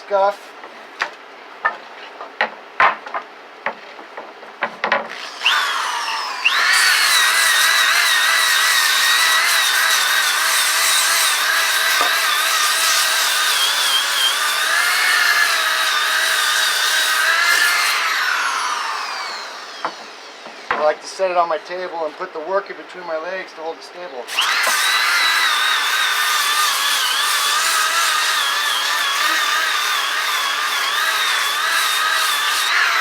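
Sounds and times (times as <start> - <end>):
disc sander whining: 5.1 - 10.4, 24.3 - 33.0.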